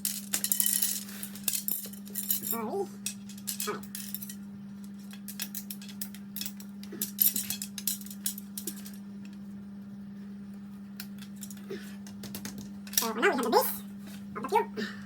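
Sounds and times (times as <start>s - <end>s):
plastic sticks clicking and rattling: 0.0s - 9.4s, 11.0s - 13.2s
steady hum: 0.0s - 15.0s.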